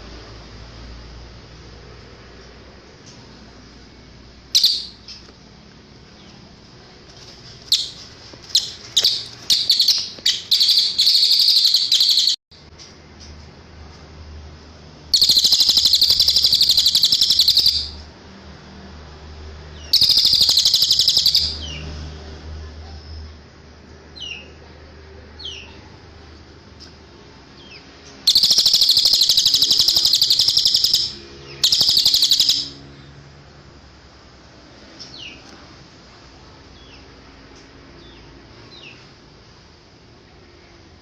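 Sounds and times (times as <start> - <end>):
bird high trills: 4.6 - 5.2, 7.7 - 12.4, 15.1 - 18.0, 19.9 - 21.6, 28.3 - 32.8.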